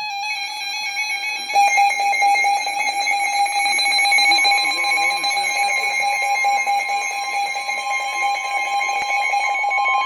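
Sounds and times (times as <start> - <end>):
steady electronic alarm tone: 1.4 - 10.0
pulsing beeping alarm: 1.5 - 10.0.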